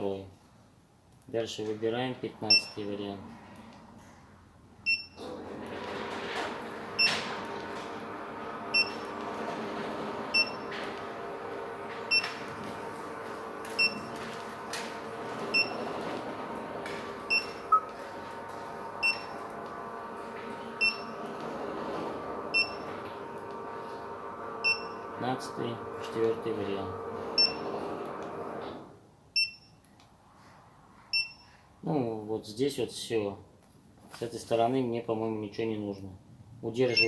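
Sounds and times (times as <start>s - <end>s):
short high car alarm beeps: 4.9s - 5.2s, 13.8s - 14.0s, 17.3s - 17.9s, 29.4s - 29.8s, 31.1s - 31.6s.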